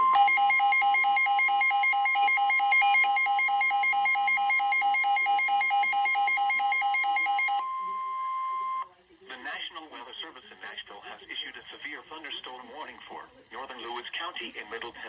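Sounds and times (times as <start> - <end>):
rapid beeping: 0.0 - 7.6
steady warning alarm tone: 0.0 - 8.8.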